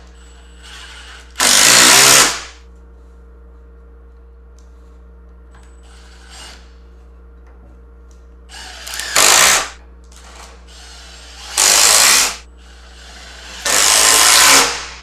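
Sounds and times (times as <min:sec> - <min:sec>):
power drill driving screws: 0:00.2 - 0:02.6, 0:05.8 - 0:06.7, 0:08.5 - 0:15.0.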